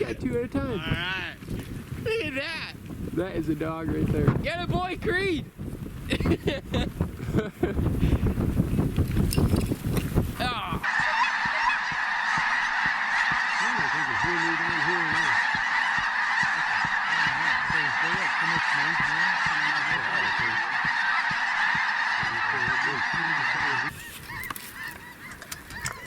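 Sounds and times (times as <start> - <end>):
snow geese calling: 10.4 - 26.0.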